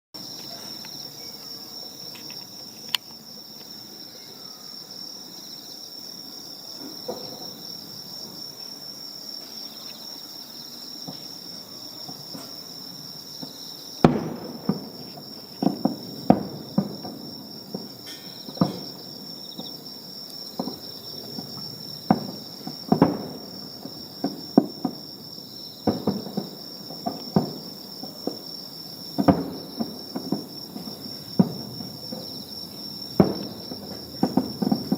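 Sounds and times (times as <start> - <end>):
high insect trill: 0.2 - 34.9
fireworks bursting: 13.3 - 19.1, 20.5 - 25.1, 25.8 - 28.4, 29.1 - 34.9.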